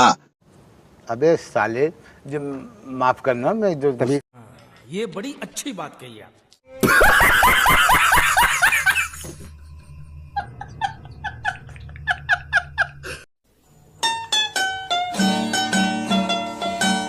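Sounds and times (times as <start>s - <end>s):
laughter: 6.8s - 13.3s
plucked-string tune: 14.0s - 17.0s.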